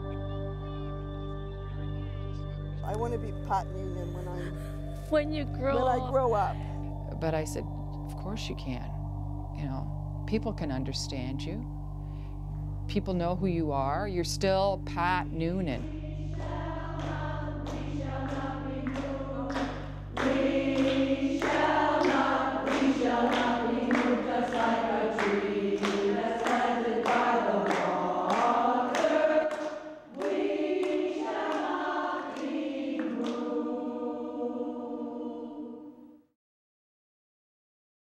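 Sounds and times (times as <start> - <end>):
choir singing: 3.0 - 11.8, 15.1 - 36.3.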